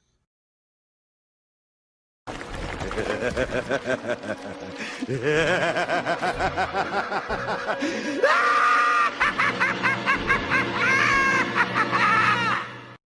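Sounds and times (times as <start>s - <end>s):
bursts of laughing: 2.8s - 12.8s
high-pitched shrieking laughs: 5.0s - 13.0s.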